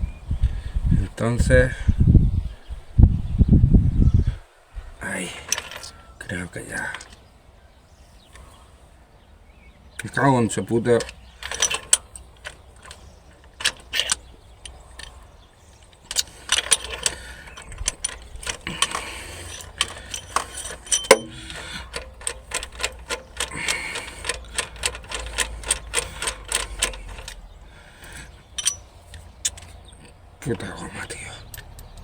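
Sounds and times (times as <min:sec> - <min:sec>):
metallic clicks and knocks: 0:05.5 - 0:05.9, 0:10.9 - 0:15.2, 0:15.8 - 0:29.9, 0:31.4 - 0:32.0
ratchet wrench clicking: 0:11.0 - 0:15.1, 0:16.0 - 0:27.4, 0:28.1 - 0:29.7.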